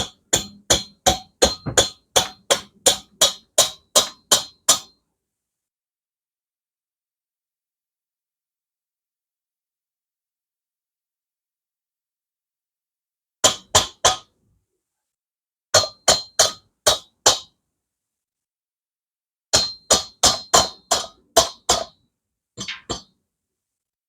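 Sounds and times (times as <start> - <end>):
hammer striking metal: 0.0 - 4.9, 22.6 - 23.0.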